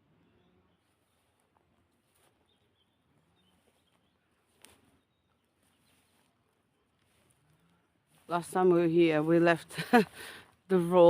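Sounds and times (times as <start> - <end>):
faint bird chirps: 0.0 - 7.8.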